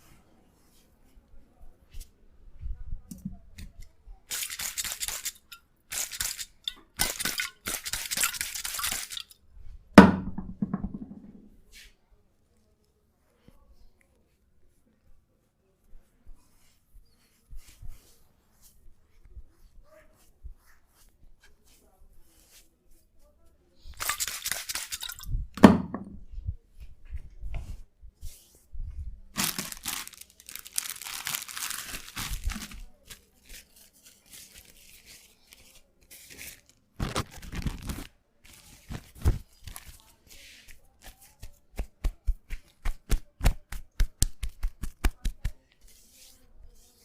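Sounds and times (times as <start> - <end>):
loud knock: 10.0 - 11.4.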